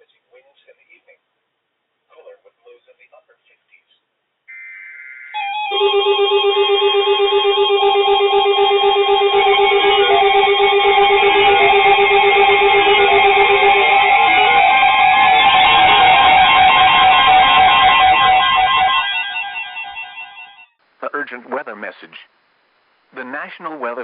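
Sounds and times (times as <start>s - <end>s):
repeating electronic alarm beeps: 4.5s - 20.7s
steady high tone: 4.5s - 20.8s.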